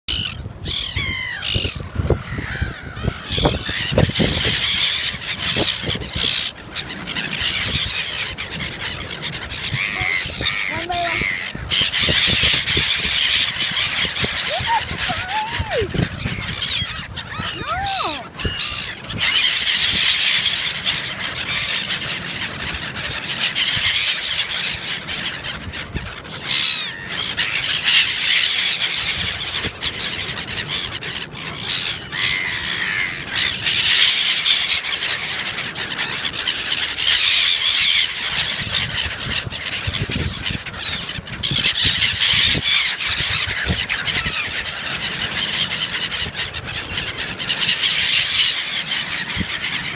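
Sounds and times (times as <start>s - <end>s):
seagulls calling: 0.1s - 49.9s.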